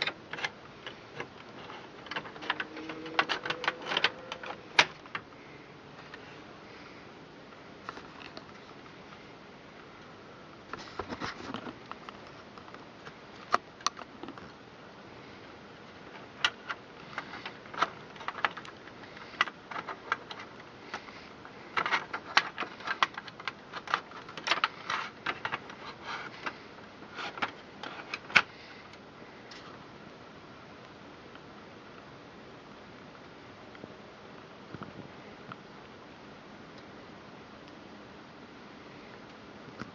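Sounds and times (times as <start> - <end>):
hardware clicks and rattles: 0.0 - 5.3, 16.1 - 26.6.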